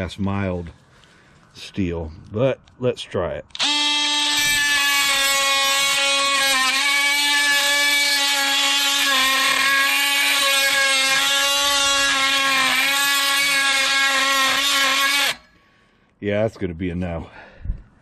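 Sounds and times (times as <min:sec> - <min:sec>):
oscillating multi-tool buzzing: 0:03.5 - 0:15.5.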